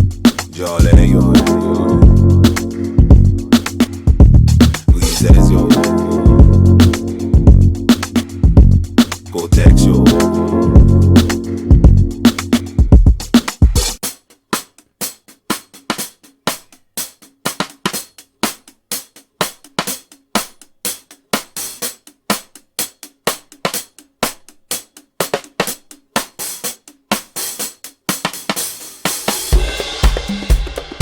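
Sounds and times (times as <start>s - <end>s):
deep bass notes: 0.0s - 13.2s
drum beat: 0.0s - 31.0s.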